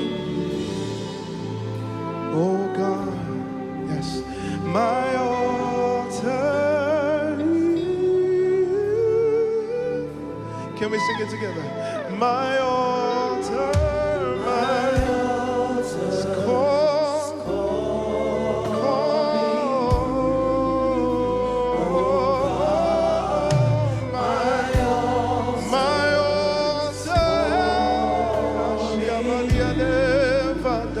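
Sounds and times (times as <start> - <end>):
keyboards and bass: 0.0 - 31.0
voices singing: 12.0 - 31.0.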